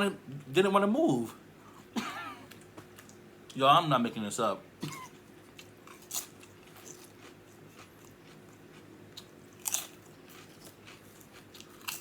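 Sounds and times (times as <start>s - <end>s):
chewing and crunchy bites: 5.5s - 12.0s.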